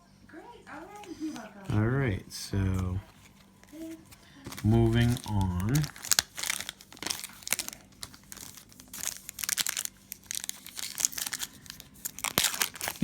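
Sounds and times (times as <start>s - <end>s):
foil wrapper crinkling and tearing: 2.6s - 13.0s.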